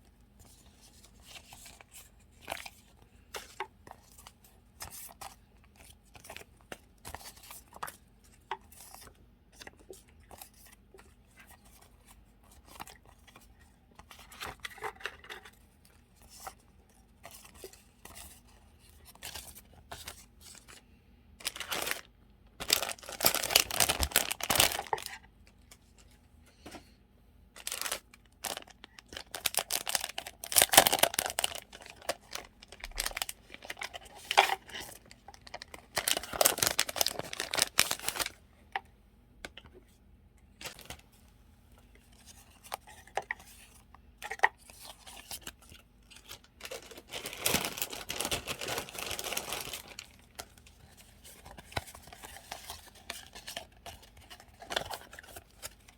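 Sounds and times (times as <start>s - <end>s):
paper rustling and crinkling: 21.4s - 26.2s, 27.6s - 38.4s, 40.6s - 41.2s, 42.0s - 55.9s.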